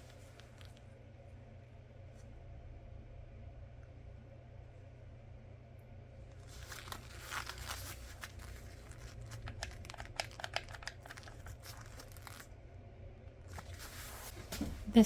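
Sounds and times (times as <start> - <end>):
plastic packaging crinkling: 6.4 - 12.6.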